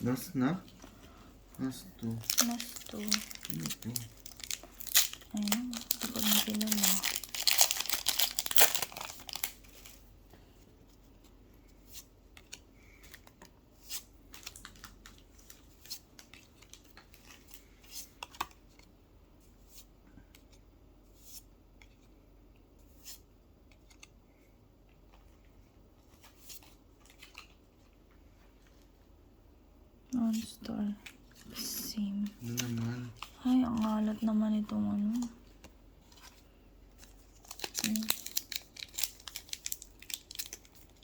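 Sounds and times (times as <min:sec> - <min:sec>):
foil pack crinkling and ripping: 0:02.1 - 0:10.0, 0:37.2 - 0:41.0.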